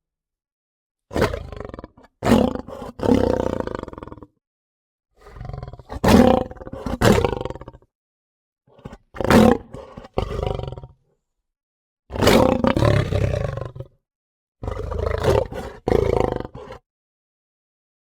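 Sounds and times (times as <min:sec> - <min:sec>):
lion roaring and growling: 0:01.1 - 0:04.2, 0:05.2 - 0:07.8, 0:08.8 - 0:10.9, 0:12.1 - 0:13.9, 0:14.6 - 0:16.8.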